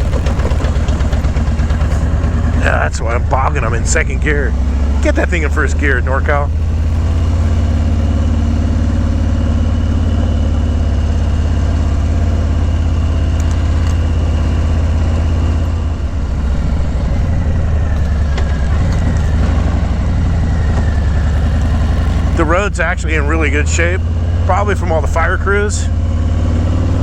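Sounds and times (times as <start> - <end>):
motorcycle engine running: 0.0 - 27.0.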